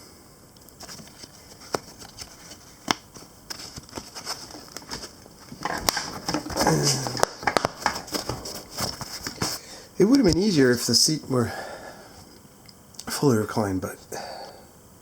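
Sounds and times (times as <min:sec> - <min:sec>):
scraping and rustling: 0:00.8 - 0:09.6
plastic trim clicking and snapping: 0:05.6 - 0:08.6.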